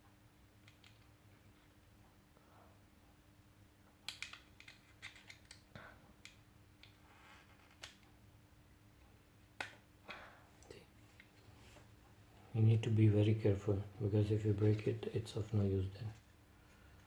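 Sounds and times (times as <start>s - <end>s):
plastic clicks and snaps: 4.1s - 7.0s, 7.6s - 8.1s, 9.6s - 9.8s.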